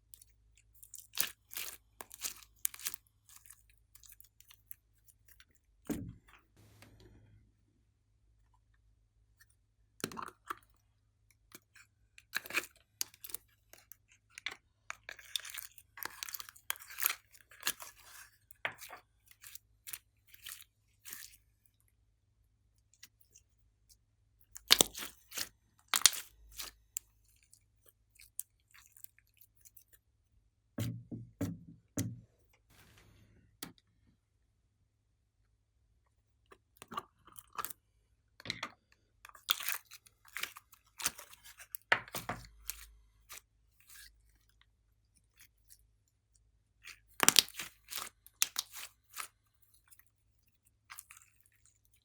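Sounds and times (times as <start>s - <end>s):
slime squelches: 24.5s - 30.0s.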